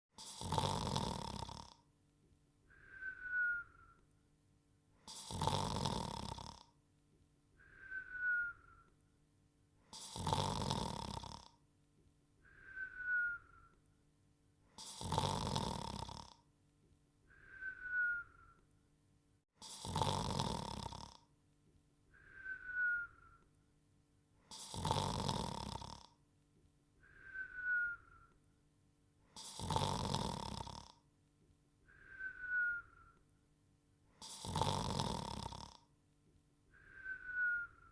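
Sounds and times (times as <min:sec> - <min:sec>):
cartoon dog snoring: 0:00.1 - 0:01.9, 0:05.0 - 0:06.8, 0:09.8 - 0:11.6, 0:14.7 - 0:16.4, 0:19.6 - 0:21.3, 0:24.4 - 0:26.2, 0:29.3 - 0:31.0, 0:34.1 - 0:35.9
descending whistle: 0:02.8 - 0:04.0, 0:07.6 - 0:08.9, 0:12.5 - 0:13.8, 0:17.3 - 0:18.6, 0:22.2 - 0:23.5, 0:27.0 - 0:28.4, 0:31.9 - 0:33.2, 0:36.8 - 0:37.9.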